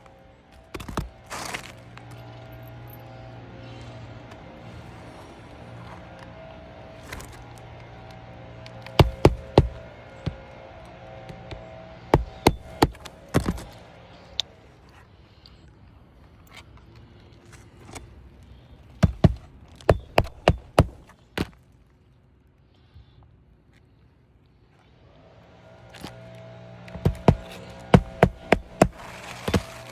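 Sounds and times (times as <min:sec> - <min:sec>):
hammer tapping: 0:09.0 - 0:09.8, 0:12.2 - 0:13.7, 0:19.0 - 0:21.0, 0:27.0 - 0:29.9.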